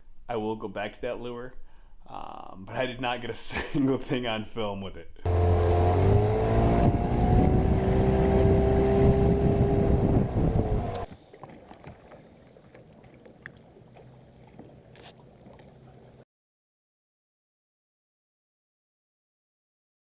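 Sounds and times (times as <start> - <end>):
outboard motor running: 5.3 - 11.1
wind on microphone: 6.4 - 11.1.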